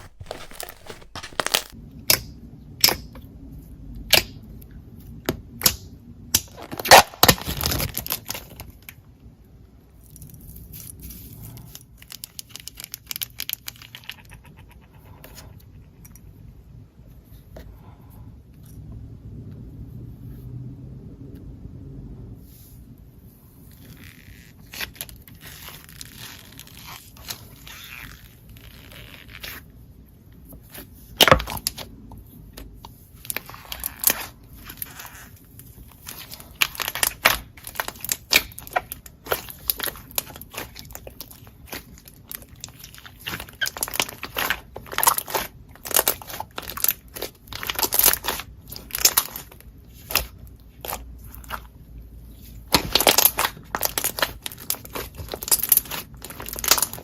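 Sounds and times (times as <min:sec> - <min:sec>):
slime squished by hand: 0:00.0 - 0:01.8, 0:33.2 - 0:51.8, 0:52.4 - 0:57.0
sticky clicks and pops: 0:00.0 - 0:01.8.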